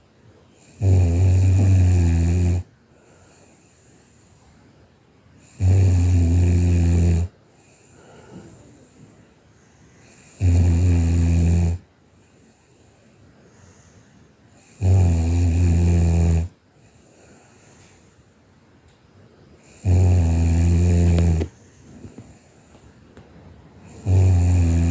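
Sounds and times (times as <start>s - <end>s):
person snoring: 0.6s - 2.7s, 5.4s - 7.3s, 10.0s - 11.8s, 14.6s - 16.5s, 19.6s - 21.6s, 23.8s - 24.9s.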